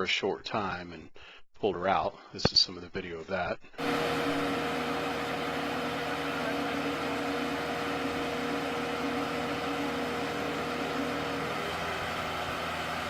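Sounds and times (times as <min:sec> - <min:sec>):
boat lift engine humming: 0:03.8 - 0:13.0.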